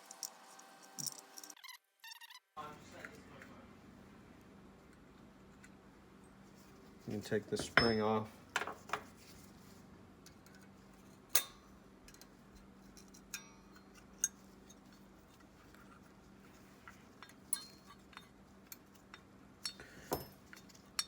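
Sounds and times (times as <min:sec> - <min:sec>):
small metal parts clinking: 0:00.0 - 0:01.6, 0:17.2 - 0:21.0
faint steady hum: 0:02.6 - 0:21.0.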